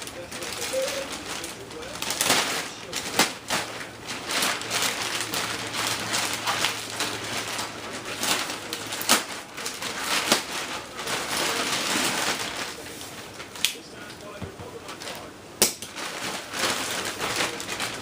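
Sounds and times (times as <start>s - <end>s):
cardboard tearing and rustling: 0.0s - 13.6s, 15.8s - 18.0s.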